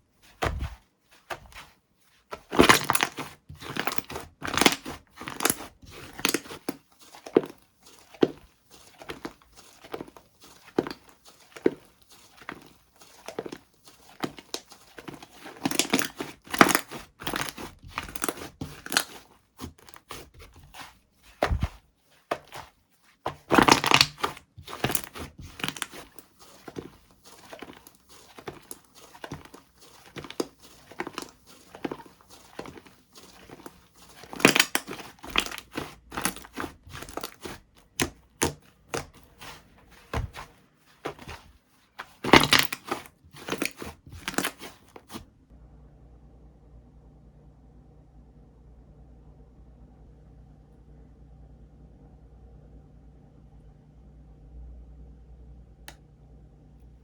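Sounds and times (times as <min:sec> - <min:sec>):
slime squeezed crackling pops: 0:23.4 - 0:39.6.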